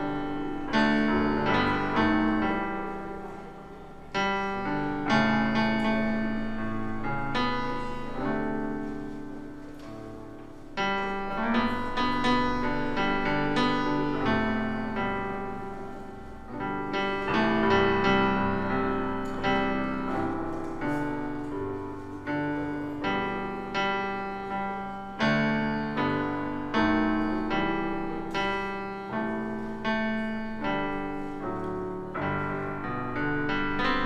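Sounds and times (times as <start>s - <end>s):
slow piano chords: 0.0s - 34.0s.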